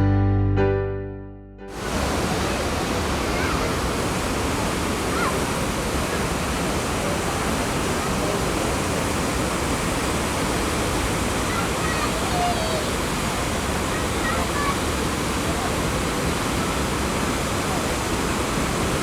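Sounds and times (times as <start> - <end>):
keyboard background music: 0.0 - 1.7
roaring river waterfall: 1.7 - 19.0.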